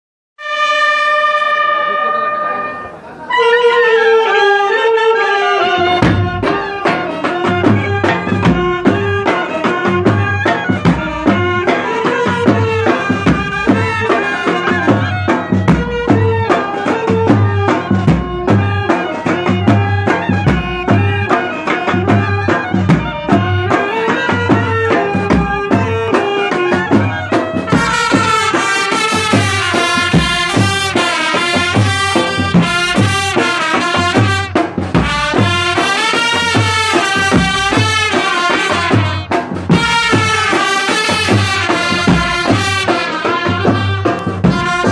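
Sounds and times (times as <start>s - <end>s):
brass melody: 0.4s - 44.9s
steady drum beat: 1.4s - 44.9s.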